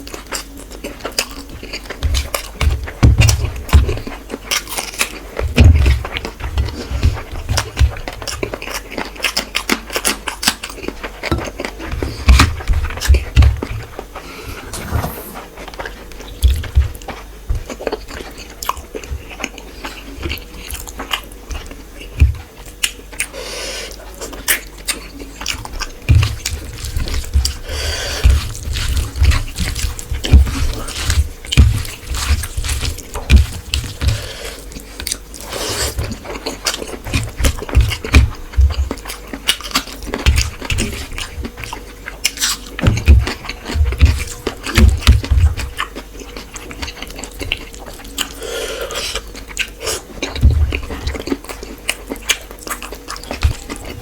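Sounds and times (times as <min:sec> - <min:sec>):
wet chewing and lip smacks: 0:36.1 - 0:54.0.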